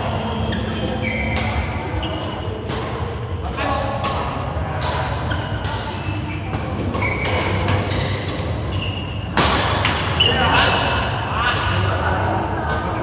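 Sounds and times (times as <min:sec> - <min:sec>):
reverberant hall murmur: 0:00.0 - 0:13.0
shoes squeaking on court: 0:00.4 - 0:02.6, 0:06.7 - 0:09.3
racket hitting shuttlecock: 0:01.3 - 0:08.7, 0:09.3 - 0:10.2.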